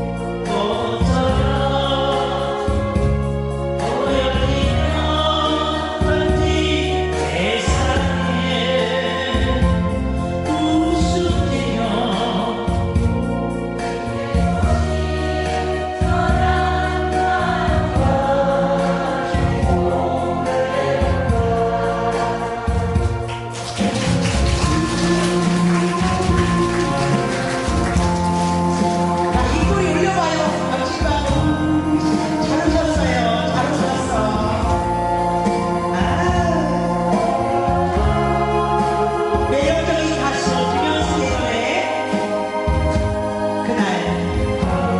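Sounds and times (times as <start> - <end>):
bass line: 0.0 - 44.9
instrumental backing track: 0.0 - 44.9
voices singing together: 14.4 - 44.9.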